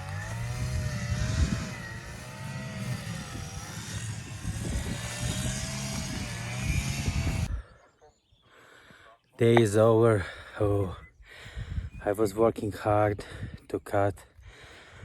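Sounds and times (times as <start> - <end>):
string trimmer engine running: 0.0 - 7.5.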